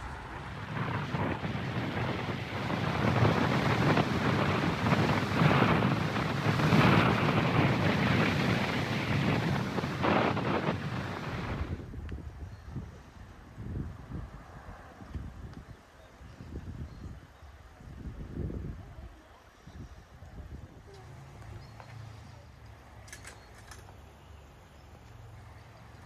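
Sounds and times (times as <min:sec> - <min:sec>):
wind buffeting microphone: 0:00.0 - 0:15.7.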